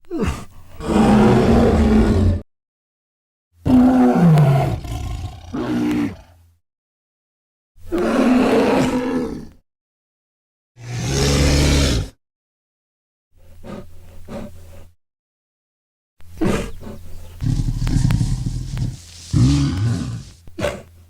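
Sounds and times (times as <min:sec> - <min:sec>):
bear growl: 0:00.0 - 0:02.4, 0:03.6 - 0:06.4, 0:07.9 - 0:09.6, 0:10.8 - 0:12.2, 0:16.4 - 0:20.9
loud bear roars: 0:00.1 - 0:02.4, 0:03.6 - 0:06.4, 0:07.9 - 0:09.6, 0:10.8 - 0:12.2, 0:17.4 - 0:20.9.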